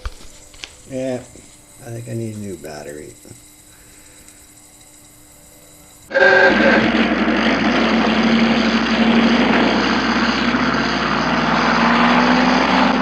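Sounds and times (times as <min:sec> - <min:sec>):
loud engine running: 0:06.0 - 0:13.0.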